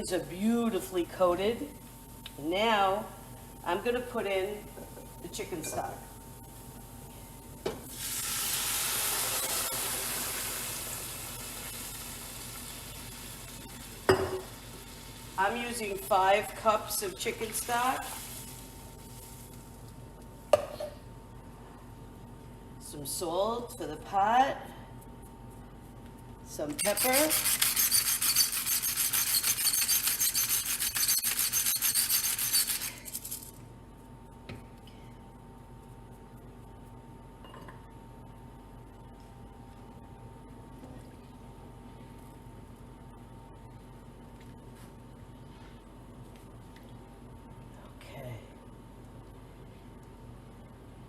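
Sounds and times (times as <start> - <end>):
stock hissing in hot pan: 7.9 - 15.4, 18.0 - 19.5
pepper mill grinding: 26.8 - 33.6.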